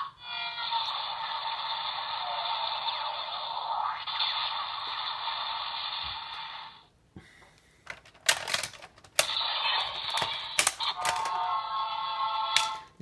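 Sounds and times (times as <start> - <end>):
toy electronic sound effects: 0.0 - 6.9, 8.4 - 13.0
plastic toy clicks: 7.9 - 11.4, 12.5 - 13.0.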